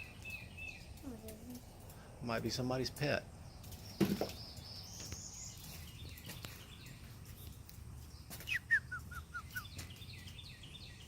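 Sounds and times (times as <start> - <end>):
bird calling: 8.3 - 11.0.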